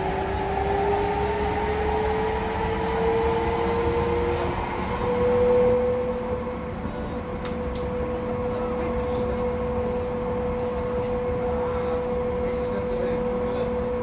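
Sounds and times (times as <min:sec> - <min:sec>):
metro train drive whine: 0:00.0 - 0:14.0.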